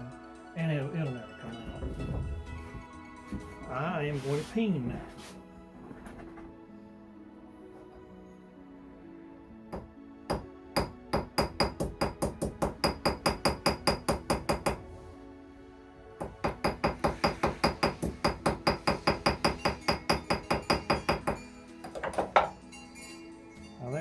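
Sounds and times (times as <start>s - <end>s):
small hammer tapping: 9.8s - 14.8s, 16.2s - 22.5s.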